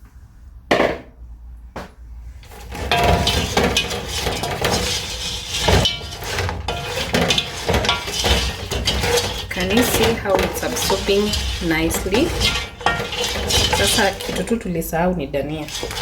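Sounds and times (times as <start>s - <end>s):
utensil scraping a pan: 2.4s - 16.0s.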